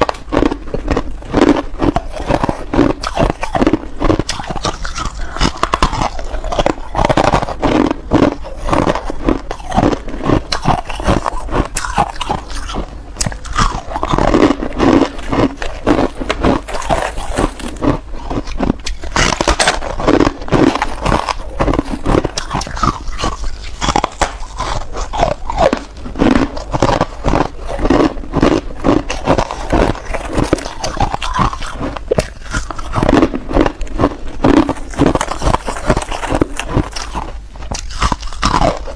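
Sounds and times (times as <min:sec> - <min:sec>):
person chewing: 0:00.0 - 0:38.9
ice crunching: 0:13.4 - 0:38.8.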